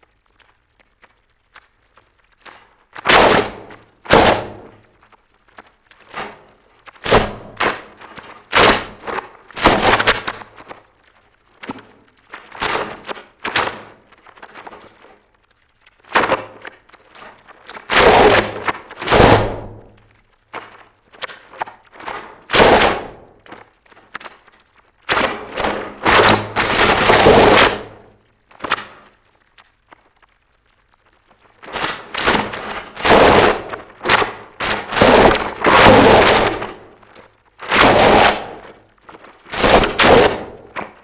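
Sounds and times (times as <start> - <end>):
distorted noise crashes: 6.1 - 10.5, 17.8 - 20.1, 25.1 - 28.9, 31.6 - 41.0.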